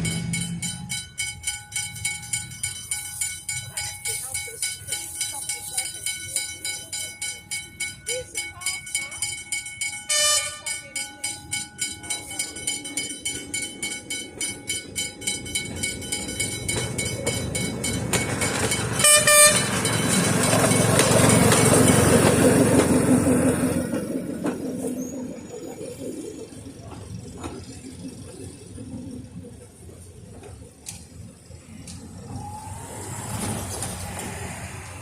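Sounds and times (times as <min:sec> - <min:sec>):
rapid regular ringing beat: 0:00.0 - 0:19.1
rush of steam and rolling carriages: 0:00.0 - 0:35.0
steam train whistle toot: 0:10.1 - 0:10.8, 0:19.0 - 0:19.8.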